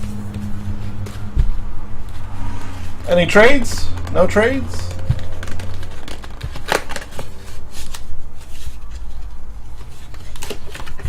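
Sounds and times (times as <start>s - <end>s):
low hum: 0.0s - 7.6s
paper and card rustling: 0.0s - 11.0s.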